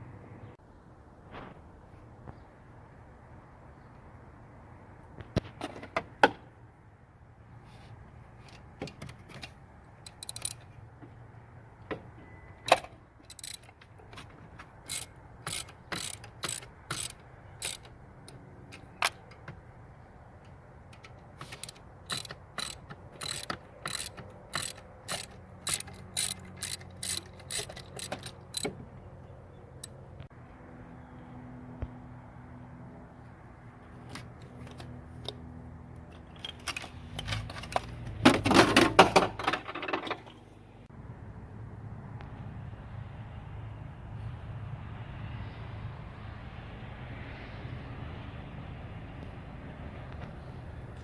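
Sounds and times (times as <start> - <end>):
ratchet wrench clicking: 10.0 - 10.6, 12.7 - 13.8, 14.8 - 19.4, 21.0 - 28.8.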